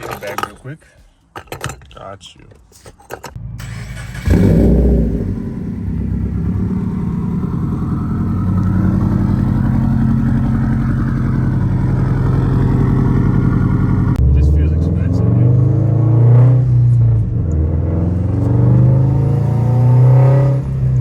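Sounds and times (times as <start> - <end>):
car engine idling: 3.4 - 15.1.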